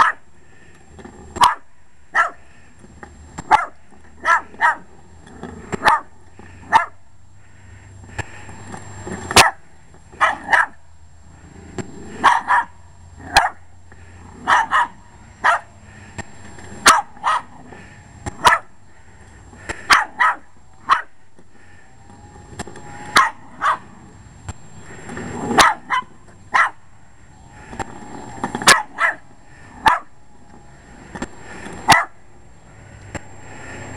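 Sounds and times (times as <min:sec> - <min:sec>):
dog barking sharply: 0:03.5 - 0:04.8.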